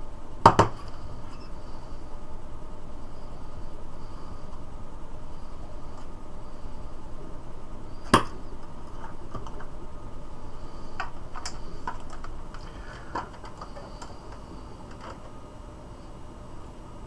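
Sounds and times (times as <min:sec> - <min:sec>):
small hard objects knocking on desk: 0:00.5 - 0:01.0, 0:08.0 - 0:09.7, 0:10.8 - 0:15.3.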